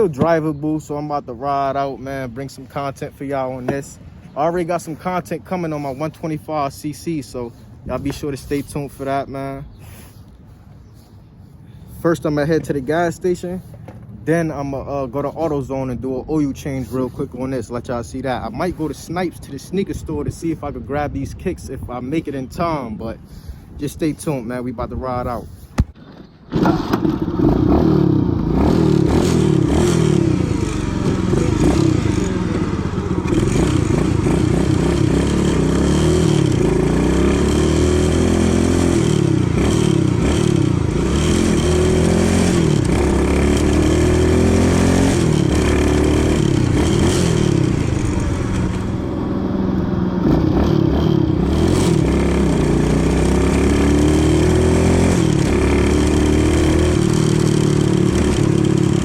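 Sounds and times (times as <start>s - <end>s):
small motorbike engine revving: 26.5s - 59.0s.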